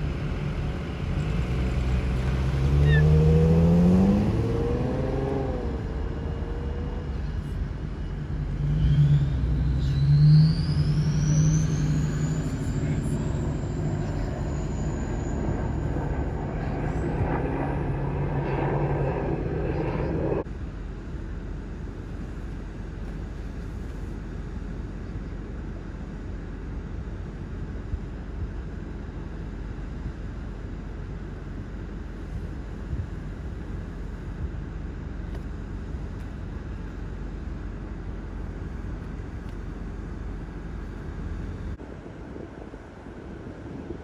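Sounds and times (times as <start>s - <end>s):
engine humming: 0.0s - 44.0s
thin high whine: 8.7s - 20.4s.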